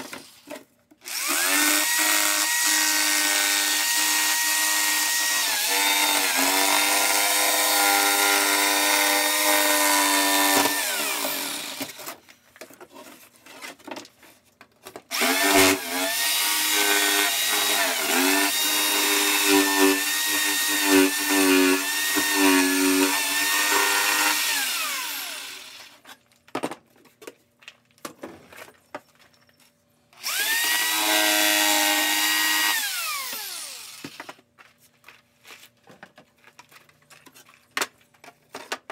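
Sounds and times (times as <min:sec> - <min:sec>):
power tool motor running: 0:01.1 - 0:06.6, 0:07.3 - 0:11.9, 0:15.1 - 0:25.9, 0:30.2 - 0:34.4.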